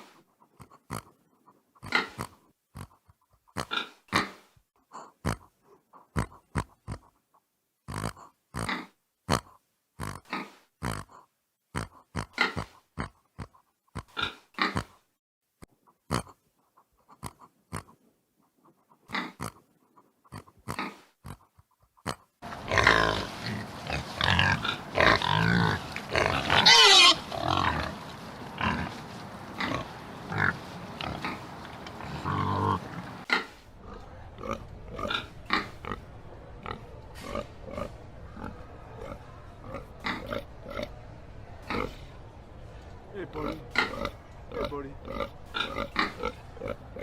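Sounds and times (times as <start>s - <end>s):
pigs grunting: 0.0s - 1.2s, 1.8s - 7.2s, 7.9s - 15.0s, 16.1s - 16.4s, 17.0s - 18.0s, 19.0s - 19.7s, 20.3s - 42.3s, 43.2s - 47.0s
pigs squealing: 22.6s - 28.0s, 29.6s - 40.9s, 43.3s - 47.0s.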